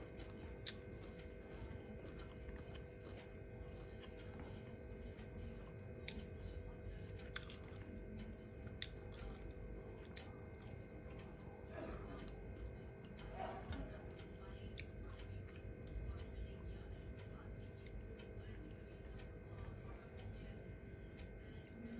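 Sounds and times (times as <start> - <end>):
person chewing food: 0.0 - 21.8
faint steady hum: 0.0 - 21.9.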